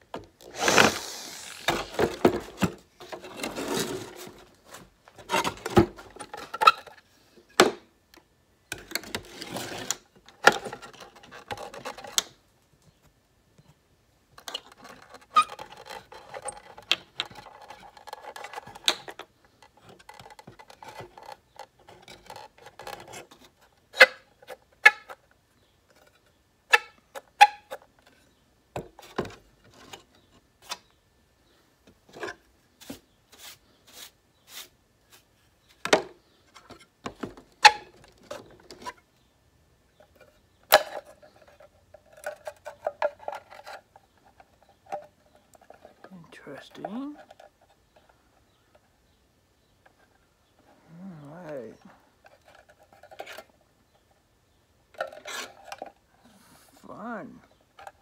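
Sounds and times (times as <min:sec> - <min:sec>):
scraping and rubbing on a case: 0:00.4 - 0:06.9, 0:09.0 - 0:12.2, 0:14.5 - 0:23.7, 0:55.0 - 0:56.8.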